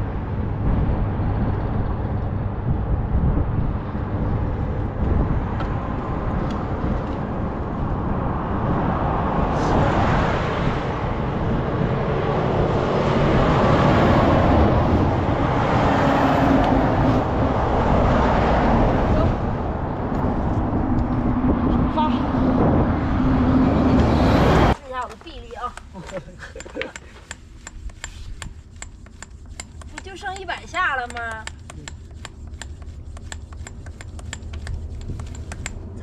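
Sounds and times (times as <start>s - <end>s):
wind rumble on microphone: 0.0s - 24.8s
road vehicle passing: 0.0s - 24.9s.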